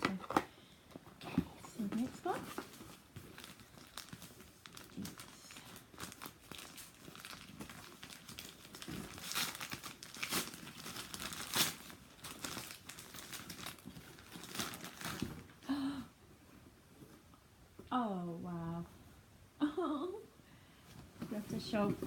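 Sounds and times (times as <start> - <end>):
gift wrapping crinkling: 0.0 - 16.0.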